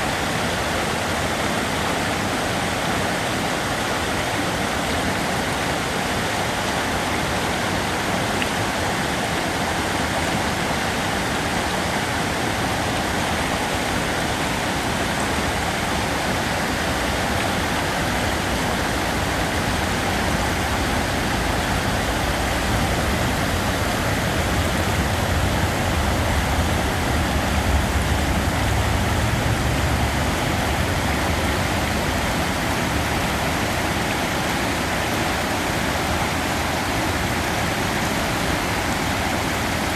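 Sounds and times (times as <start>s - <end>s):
river water rushing: 0.0s - 39.9s
low rumble: 19.0s - 33.1s.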